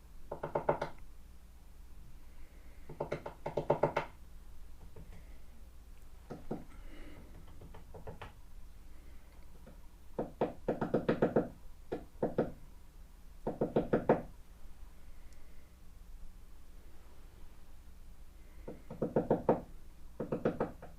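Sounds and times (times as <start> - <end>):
woodpecker pecking on wood: 2.8 - 4.1, 6.3 - 8.4, 9.5 - 12.6, 18.6 - 20.9.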